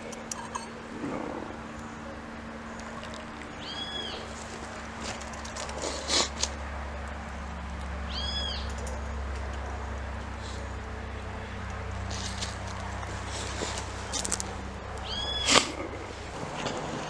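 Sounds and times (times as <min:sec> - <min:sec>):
steady low hum: 0:00.0 - 0:17.0
bird whistled calls: 0:03.6 - 0:04.3, 0:15.0 - 0:15.6.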